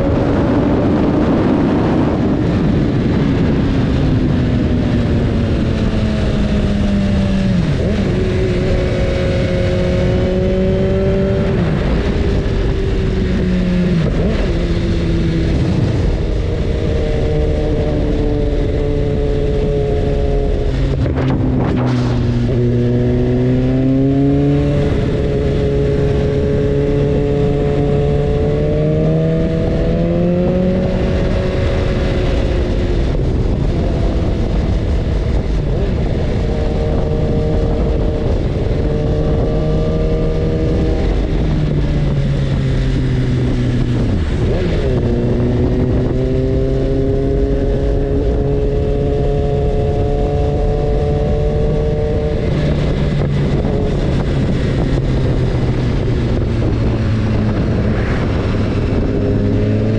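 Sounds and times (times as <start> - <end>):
motorcycle engine running: 0.0 - 59.9
wind and road noise: 0.0 - 59.9.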